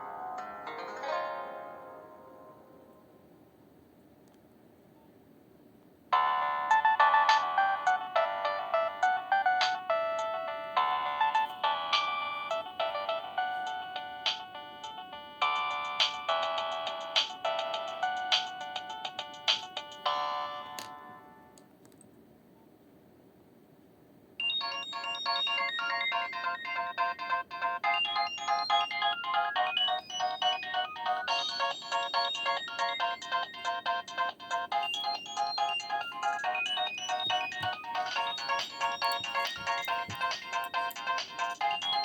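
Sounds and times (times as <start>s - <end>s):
mobile phone ringtone: 6.2s - 21.5s, 24.4s - 42.0s.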